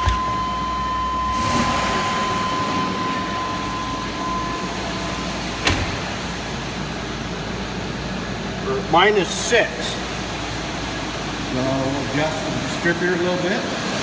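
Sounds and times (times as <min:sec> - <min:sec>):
thin steady whine: 0:00.0 - 0:08.9
car engine idling: 0:00.0 - 0:14.0.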